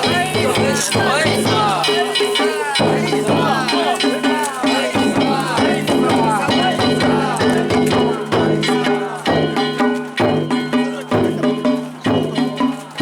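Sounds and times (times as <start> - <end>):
drums beating: 0.0 - 13.0.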